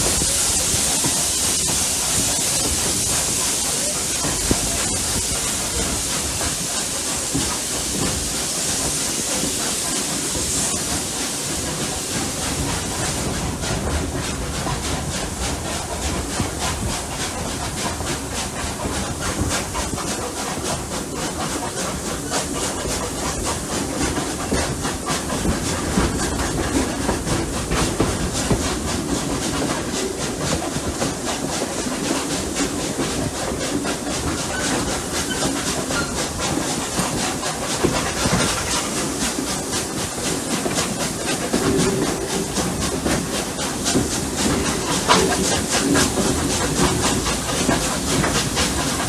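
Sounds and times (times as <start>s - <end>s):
steam hissing: 0.0s - 49.0s
steam locomotive exhaust beats: 0.0s - 49.0s
wheels clicking over rail joints: 16.1s - 49.0s.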